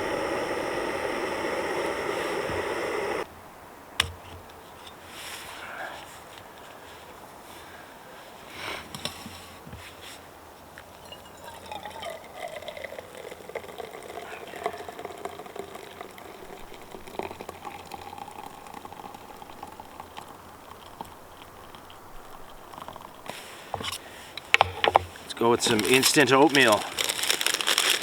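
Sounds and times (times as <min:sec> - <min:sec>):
camp stove hiss: 0:00.0 - 0:03.3, 0:12.9 - 0:28.0
water heating to a boil: 0:00.0 - 0:03.3, 0:11.0 - 0:28.0.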